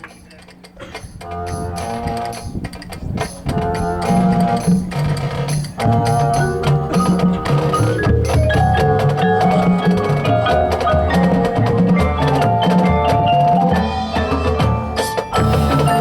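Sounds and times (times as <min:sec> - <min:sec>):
mallet keyboards melody: 0:00.0 - 0:16.0
marching drums: 0:00.0 - 0:16.0.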